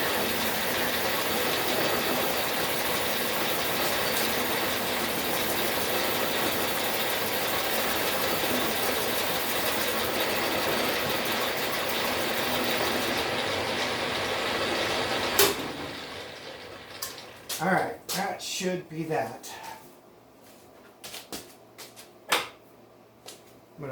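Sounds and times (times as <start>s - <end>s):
machine tool cutting: 0.0s - 17.4s
loud machine clunk: 15.3s - 16.0s.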